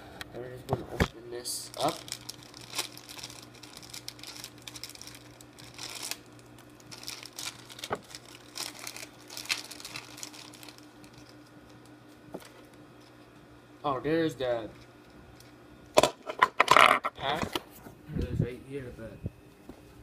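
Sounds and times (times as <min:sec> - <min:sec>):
plastic packaging crinkling and tearing: 0:01.4 - 0:13.2.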